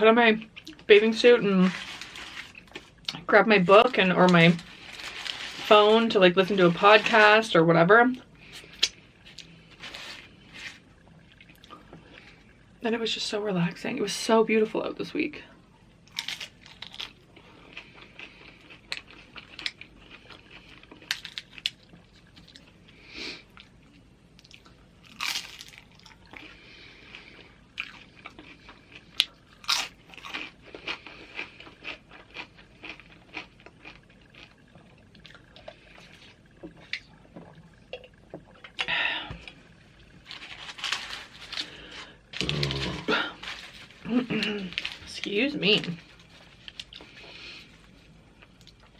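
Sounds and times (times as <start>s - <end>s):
crunching chips: 0.6s - 7.2s, 16.1s - 22.8s, 24.4s - 35.5s, 40.3s - 47.6s
wet chewing: 24.4s - 45.1s.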